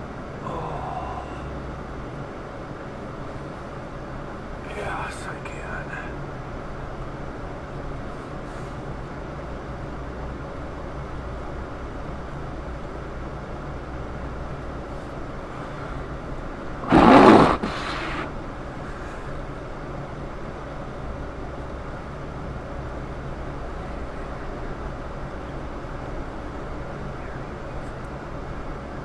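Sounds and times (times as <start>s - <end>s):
road and engine rumble in car: 0.0s - 29.0s
sudden loud rush of noise: 16.8s - 18.5s.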